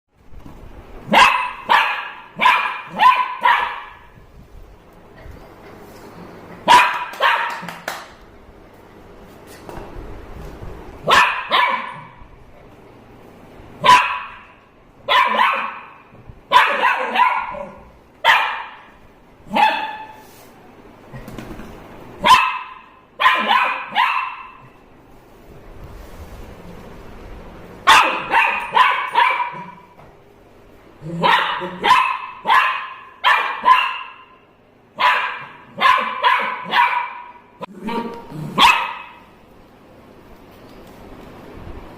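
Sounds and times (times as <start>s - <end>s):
puppy barking: 1.1s - 4.2s, 6.6s - 7.8s, 11.0s - 12.2s, 13.8s - 20.2s, 22.2s - 24.8s, 27.8s - 30.0s, 31.1s - 39.3s.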